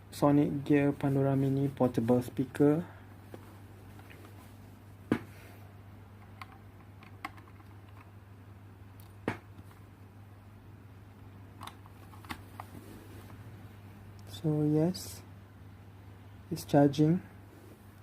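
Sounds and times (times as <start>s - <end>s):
steady low hum: 0.0s - 18.0s
cable plugging clicks: 11.6s - 12.4s.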